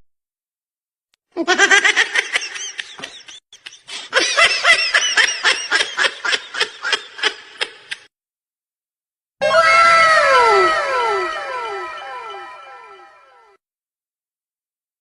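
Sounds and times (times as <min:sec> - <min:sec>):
high-pitched laughter: 0:01.4 - 0:08.1.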